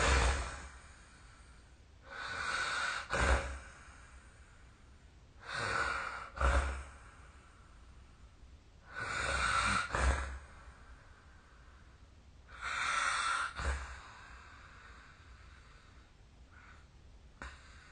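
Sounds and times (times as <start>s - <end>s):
person snoring: 0.0s - 1.5s, 2.1s - 4.2s, 5.4s - 7.3s, 8.9s - 10.7s, 12.5s - 14.7s.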